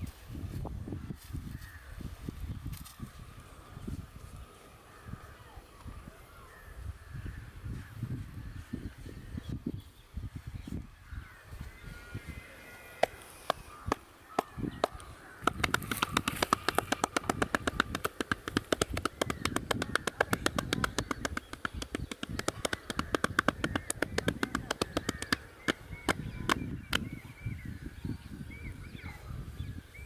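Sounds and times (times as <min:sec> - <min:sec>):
birds calling faintly: 0:01.0 - 0:30.0
rapid hand strikes on head: 0:13.0 - 0:27.1.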